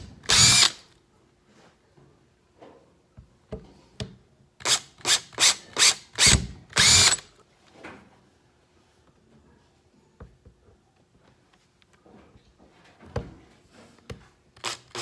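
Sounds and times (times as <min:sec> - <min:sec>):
power drill drilling into plastic: 0:00.3 - 0:00.8, 0:04.7 - 0:07.2.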